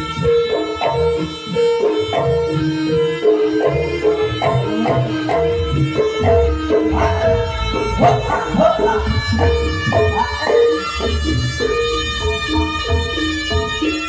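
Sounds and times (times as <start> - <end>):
hand drum rhythm: 0.0 - 14.0
heavy bass: 0.0 - 14.0
live band playing: 0.0 - 14.0.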